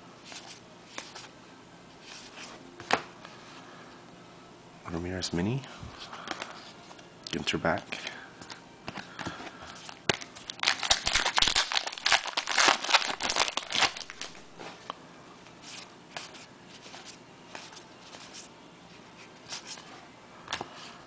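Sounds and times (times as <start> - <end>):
wrapper crinkling and tearing: 9.9 - 14.6.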